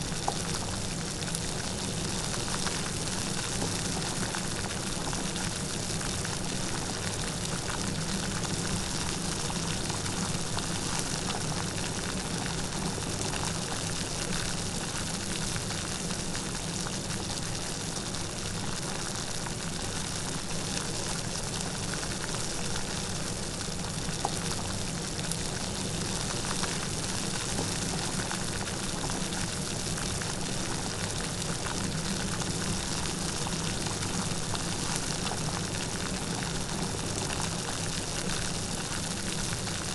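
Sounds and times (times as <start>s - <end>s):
light rain pattering: 0.1s - 39.9s.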